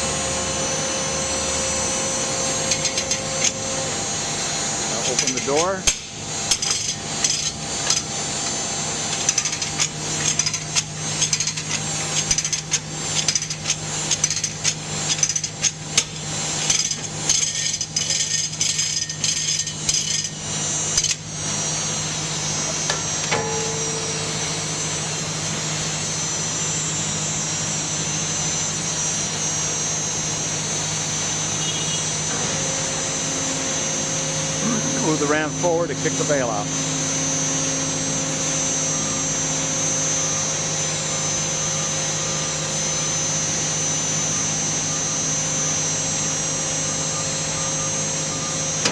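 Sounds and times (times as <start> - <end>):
hydraulic power unit humming: 0.0 - 48.9.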